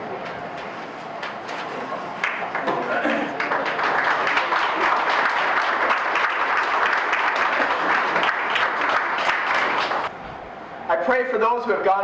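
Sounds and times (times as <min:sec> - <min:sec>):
audience applauding: 0:02.2 - 0:10.1.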